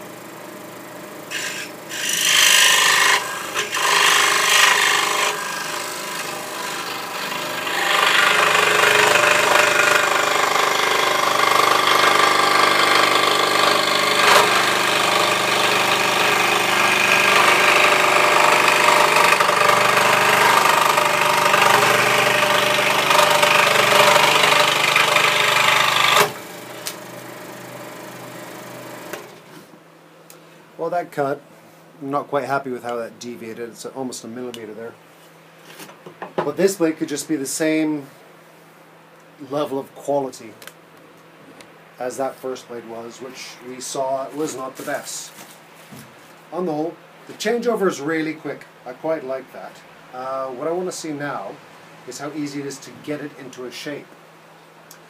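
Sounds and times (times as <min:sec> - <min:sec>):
motor hum: 0:00.0 - 0:29.7
scroll saw cutting wood: 0:01.2 - 0:29.5.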